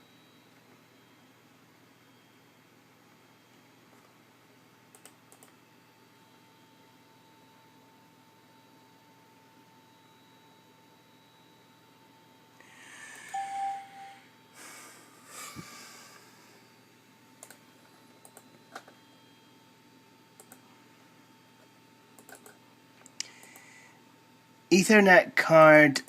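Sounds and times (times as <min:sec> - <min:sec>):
faint high whine: 0:00.0 - 0:26.0
mouse and keyboard clicks: 0:22.2 - 0:23.6.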